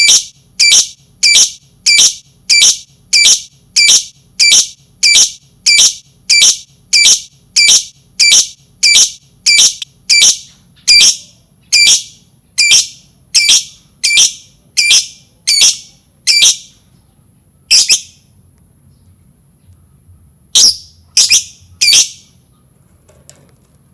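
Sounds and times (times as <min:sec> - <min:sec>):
lovebird shrill calls: 0:00.0 - 0:16.7, 0:17.7 - 0:18.2, 0:20.6 - 0:22.3.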